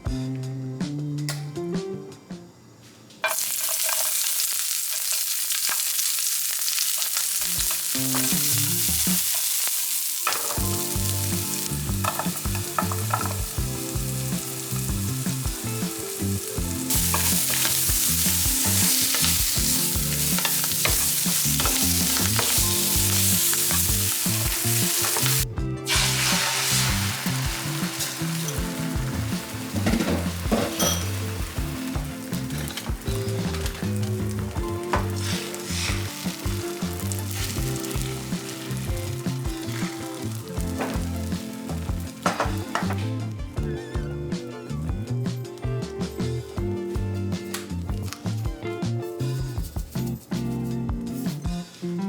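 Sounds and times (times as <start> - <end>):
food sizzling in a pan: 3.2 - 43.6.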